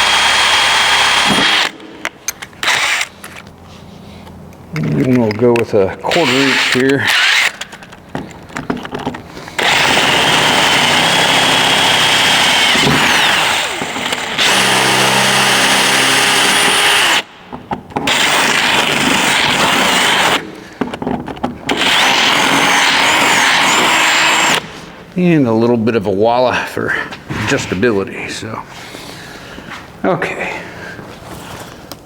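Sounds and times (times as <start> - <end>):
power drill cutting steel: 0.0 - 1.8, 6.1 - 7.6, 9.6 - 17.3, 18.1 - 20.4, 21.7 - 24.6.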